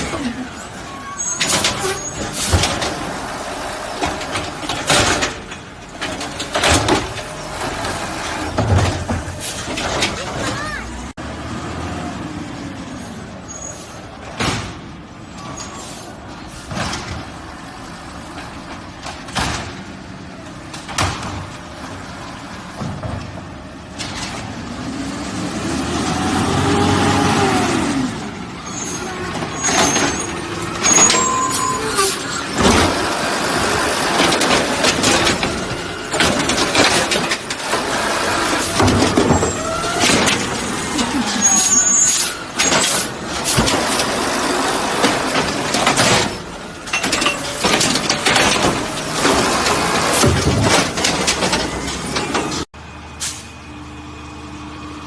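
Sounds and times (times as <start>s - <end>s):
garbage truck engine: 0.0s - 55.0s.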